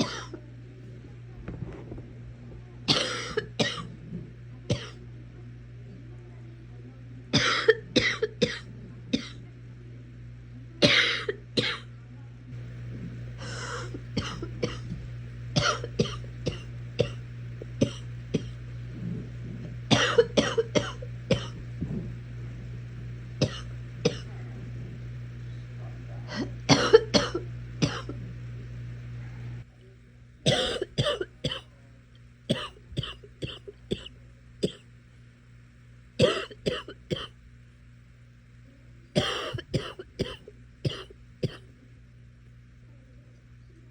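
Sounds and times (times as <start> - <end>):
person coughing: 0.0 - 0.4, 2.9 - 3.9, 7.4 - 9.4, 10.8 - 11.9, 13.4 - 14.9, 15.6 - 17.2, 17.8 - 18.6, 19.9 - 21.6, 23.4 - 24.3, 26.3 - 28.2, 30.5 - 31.7, 32.5 - 34.8, 36.2 - 37.3, 39.2 - 41.7
low steady hum: 0.0 - 43.9.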